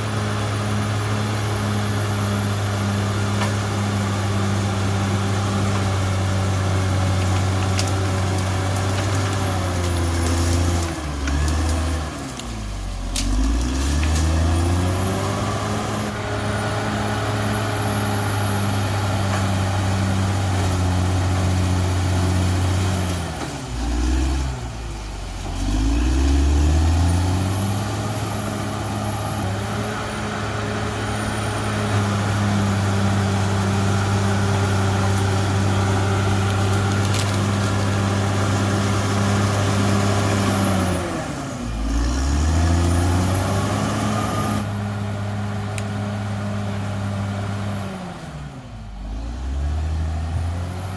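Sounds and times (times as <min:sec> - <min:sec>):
bulldozer diesel engine running: 0:00.0 - 0:50.9.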